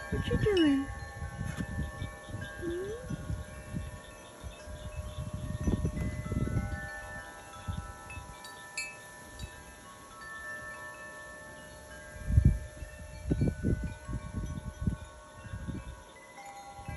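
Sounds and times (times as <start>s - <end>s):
wind chimes ringing: 0.0s - 16.9s.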